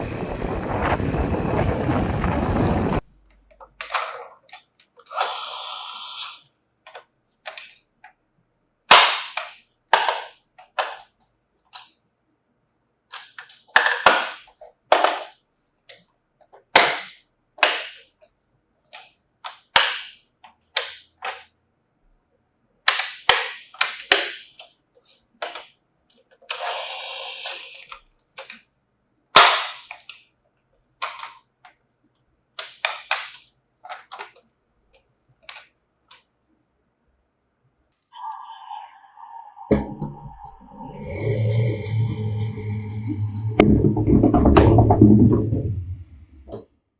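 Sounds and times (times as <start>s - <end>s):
short hiss: 5.1s - 6.5s, 26.5s - 27.9s.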